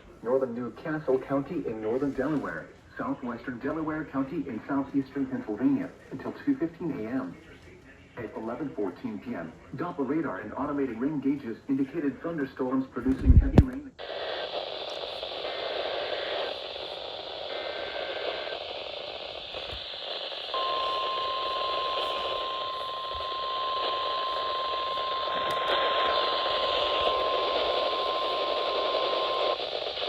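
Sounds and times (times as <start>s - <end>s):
radio static: 0.0s - 30.0s
warbling data bursts: 15.0s - 30.0s.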